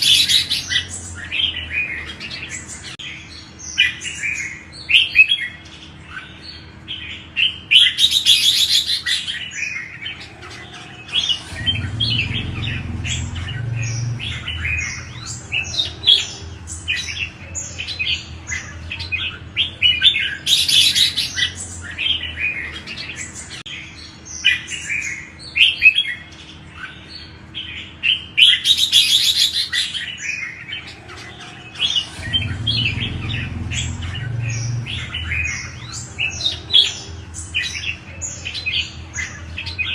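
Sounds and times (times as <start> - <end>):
birds chirping and whistling: 0.0 - 39.9
low rumble: 11.3 - 17.5, 31.9 - 38.1.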